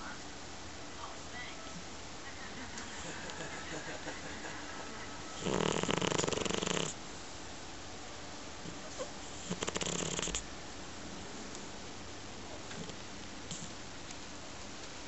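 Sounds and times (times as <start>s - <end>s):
pet snoring: 5.4s - 7.0s, 8.7s - 10.4s, 12.6s - 13.8s.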